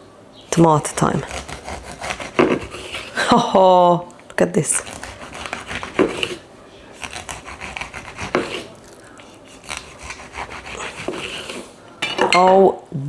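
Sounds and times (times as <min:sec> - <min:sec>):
knife sawing through tomato: 0:00.5 - 0:03.3, 0:04.7 - 0:11.8.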